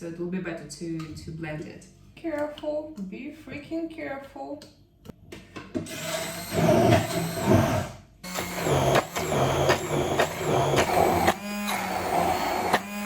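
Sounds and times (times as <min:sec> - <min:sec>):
electric blender motor pulsing: 0:05.9 - 0:13.0.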